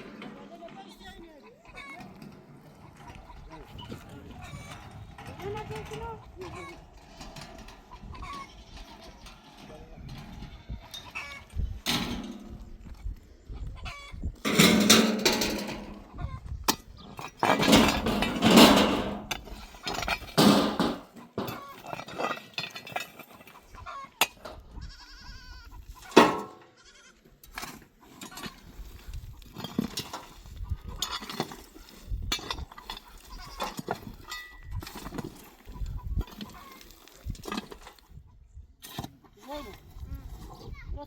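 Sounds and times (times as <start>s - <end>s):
goats bleating: 24.6s - 25.8s, 26.6s - 27.3s.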